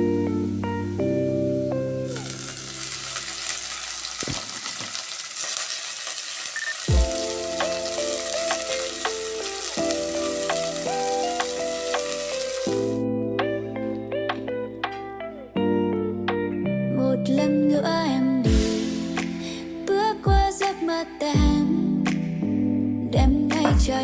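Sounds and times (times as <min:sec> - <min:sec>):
soft instrumental music: 0:00.0 - 0:03.7, 0:06.9 - 0:24.0
food sizzling in a pan: 0:00.0 - 0:13.0.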